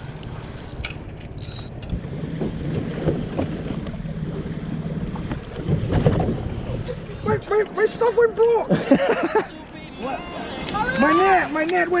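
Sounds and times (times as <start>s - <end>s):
water washing against boat: 0.0s - 7.6s.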